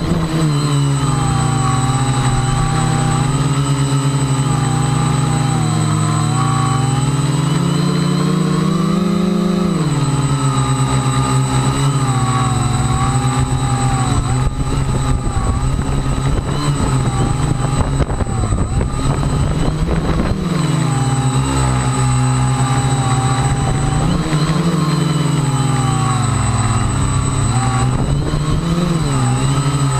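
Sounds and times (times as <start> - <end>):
model aircraft motors whining: 0.0 - 29.9
wind buffeting microphone: 12.0 - 21.3, 21.9 - 29.9.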